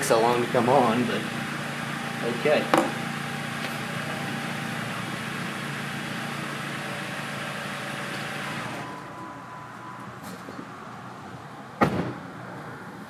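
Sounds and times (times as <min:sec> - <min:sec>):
car engine idling: 0:00.0 - 0:10.1.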